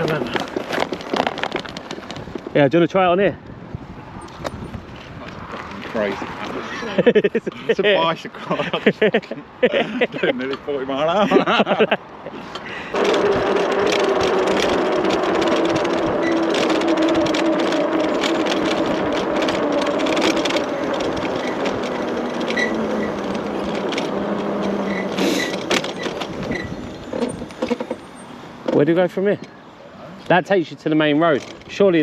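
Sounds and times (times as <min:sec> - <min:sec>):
tyre noise: 0:00.0 - 0:03.2, 0:04.2 - 0:29.5
electric bike motor whining: 0:12.9 - 0:28.4.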